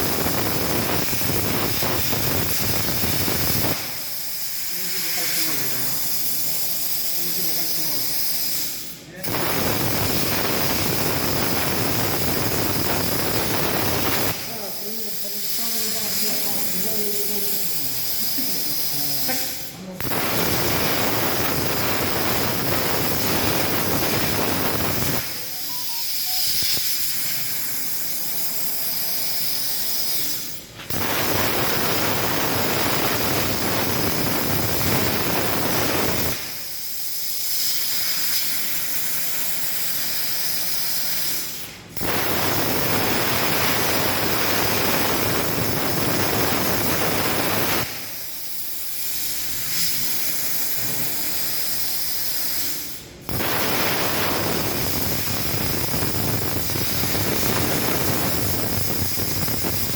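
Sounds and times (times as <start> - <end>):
plasma torch hissing loudly: 0.0 - 59.9
soft hiss with high tone: 20.8 - 27.8.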